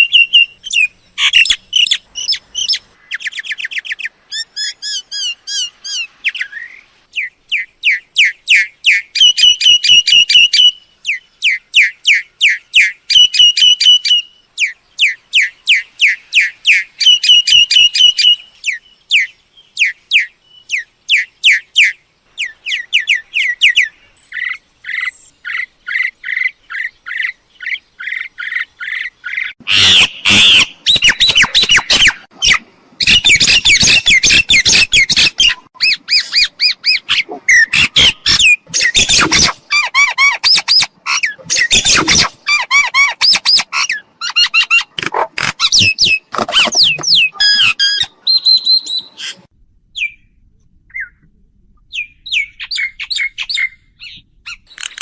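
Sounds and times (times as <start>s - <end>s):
harsh bird squawks: 0.0s - 6.8s, 22.7s - 50.1s
bird whistled notes: 45.7s - 49.4s.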